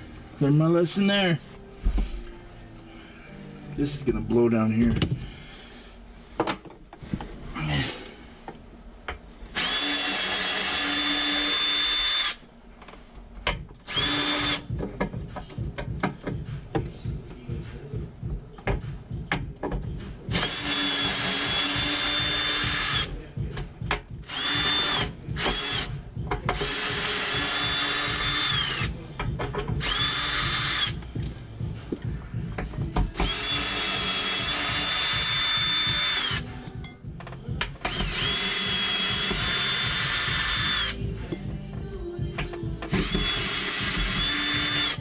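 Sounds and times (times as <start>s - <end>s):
knocks and handling: 6.4s - 7.4s, 14.7s - 20.3s, 26.2s - 26.7s, 28.5s - 29.9s, 30.6s - 33.4s, 36.5s - 38.1s, 41.0s - 43.3s
power drill whining: 9.6s - 12.4s, 13.9s - 14.7s, 20.3s - 23.1s, 24.3s - 25.9s, 26.6s - 28.9s, 29.8s - 31.0s, 33.2s - 36.4s, 37.9s - 41.0s, 42.9s - 45.0s.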